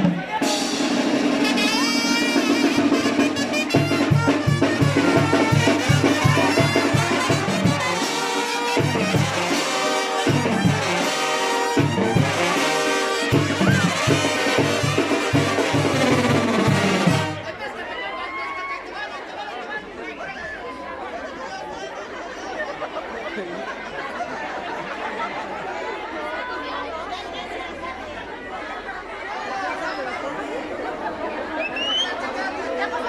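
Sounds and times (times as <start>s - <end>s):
trumpets and trombones playing: 0.0s - 17.6s.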